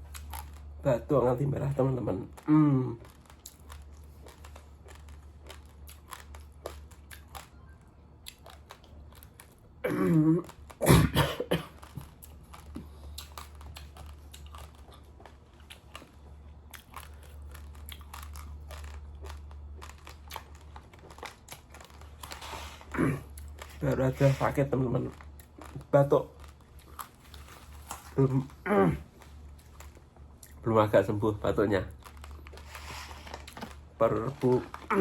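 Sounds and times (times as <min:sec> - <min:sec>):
raw rice being chewed: 0:00.0 - 0:35.0
person coughing: 0:09.8 - 0:12.0, 0:22.9 - 0:23.3, 0:28.6 - 0:29.0.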